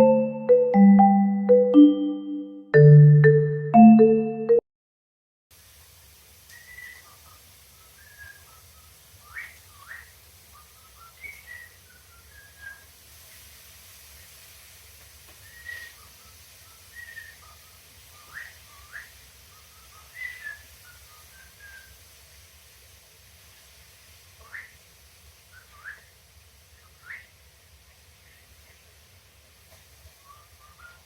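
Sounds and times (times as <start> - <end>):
cockatiel whistling and chirping: 6.5 - 7.3, 7.9 - 12.9, 15.4 - 16.1, 16.9 - 22.0, 24.4 - 24.8, 25.5 - 26.1, 26.8 - 27.3, 30.2 - 31.0.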